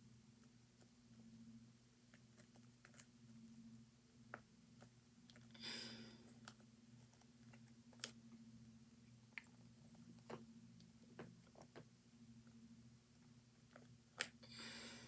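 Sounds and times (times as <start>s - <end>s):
steady low hum: 0.0s - 15.0s
faint clicks and taps of objects: 9.0s - 14.4s.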